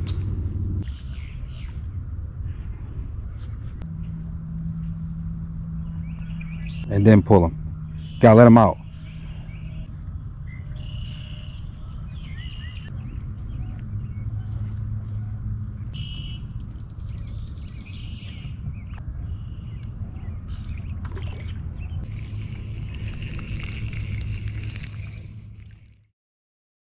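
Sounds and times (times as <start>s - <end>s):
small birds chirping: 0.0s - 1.9s, 5.8s - 24.3s
steady low rumble: 0.0s - 26.1s.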